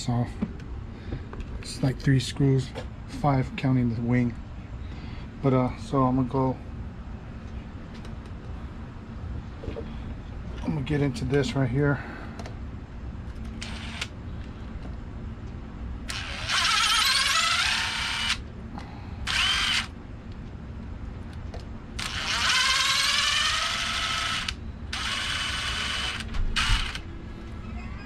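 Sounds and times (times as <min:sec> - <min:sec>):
power screwdriver whirring: 0:13.6 - 0:14.1, 0:16.1 - 0:18.4, 0:19.2 - 0:19.9, 0:22.0 - 0:27.0.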